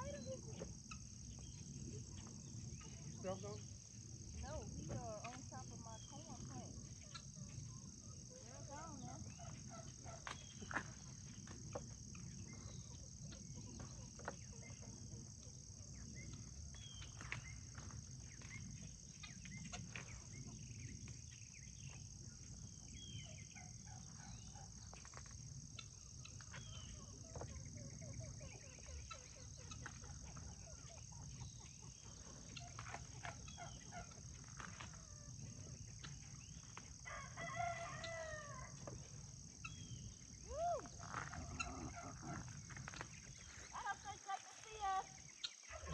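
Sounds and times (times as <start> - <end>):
chickens clucking: 25.8 - 36.4
rooster crowing: 37.0 - 38.8.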